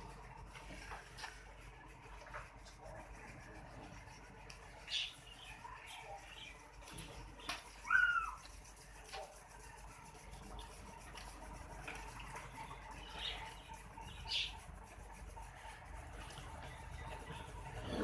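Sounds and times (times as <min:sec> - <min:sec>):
quiet farmyard ambience: 0:00.0 - 0:18.0
bird chirps: 0:04.8 - 0:08.5, 0:12.4 - 0:14.7.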